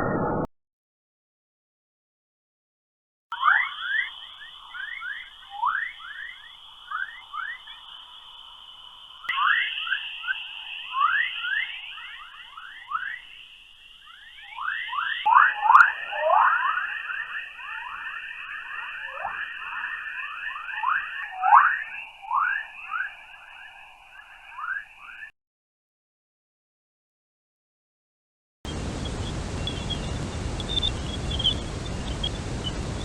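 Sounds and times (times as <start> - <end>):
falling whistling chirps: 3.3 - 25.3, 29.0 - 33.0
steady high hiss: 3.4 - 24.4, 28.7 - 33.0.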